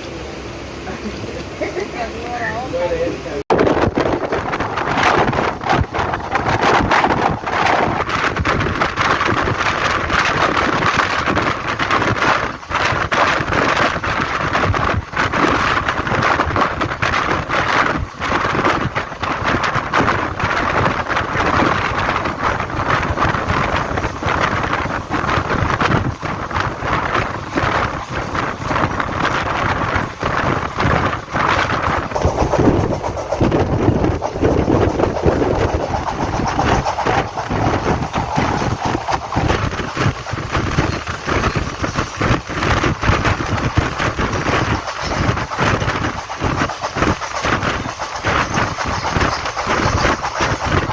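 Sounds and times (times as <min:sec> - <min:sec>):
train wheels rushing on rail: 0:00.0 - 0:50.9
wind buffeting microphone: 0:00.0 - 0:50.9.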